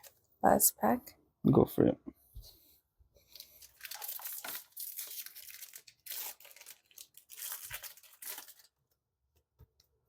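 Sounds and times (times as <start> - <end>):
foil wrapper tearing and crinkling: 3.3 - 8.8.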